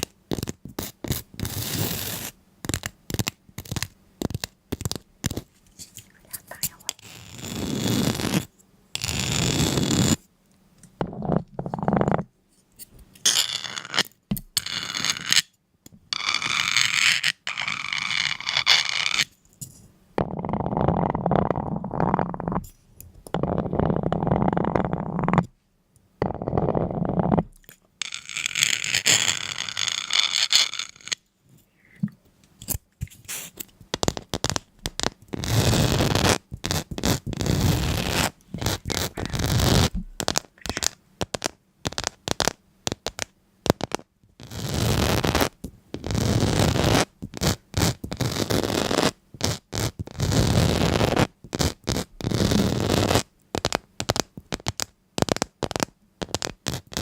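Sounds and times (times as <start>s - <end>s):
scraping and rubbing strokes: 16.2s - 19.4s, 28.0s - 32.1s, 33.0s - 57.0s.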